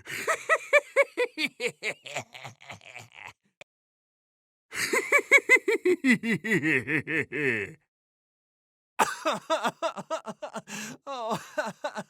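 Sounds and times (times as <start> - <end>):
person laughing: 0.0 - 3.4, 4.8 - 7.8, 9.0 - 12.0.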